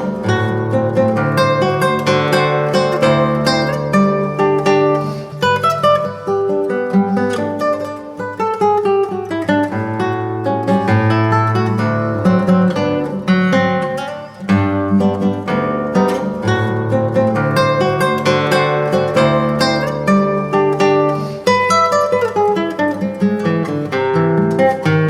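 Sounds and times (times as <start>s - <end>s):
fingerpicked classical guitar: 0.0s - 25.0s.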